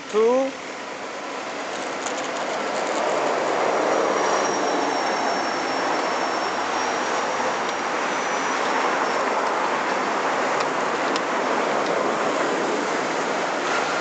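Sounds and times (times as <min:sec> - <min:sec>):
road traffic rushing: 0:00.0 - 0:14.0.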